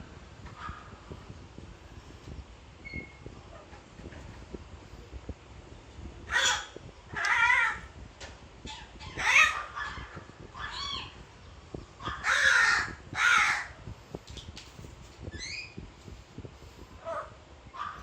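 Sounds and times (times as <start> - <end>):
crow cawing: 12.2 - 13.7.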